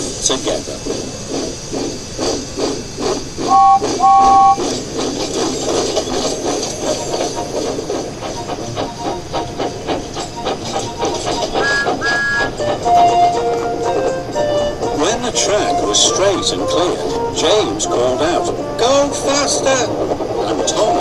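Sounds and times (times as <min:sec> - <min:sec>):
steam locomotive chuffing: 0:00.0 - 0:21.0
two-note train whistle toots: 0:03.5 - 0:04.6, 0:11.6 - 0:15.0.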